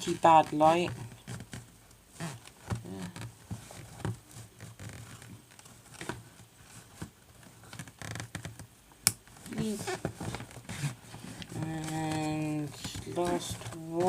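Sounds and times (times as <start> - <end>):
packaging being handled: 2.3 - 14.0.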